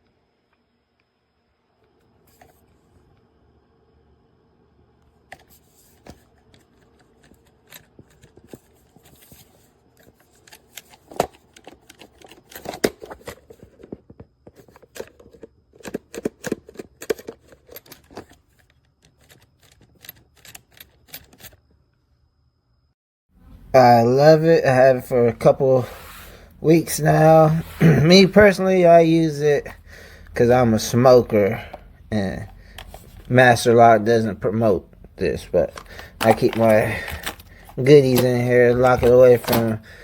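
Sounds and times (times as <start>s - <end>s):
lock box clicks and clacks: 14.8s - 21.6s.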